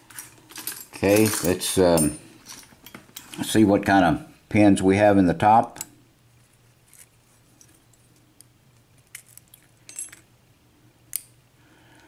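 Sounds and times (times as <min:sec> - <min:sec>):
small metal clicks and clinks: 0:00.1 - 0:03.4, 0:09.0 - 0:10.3.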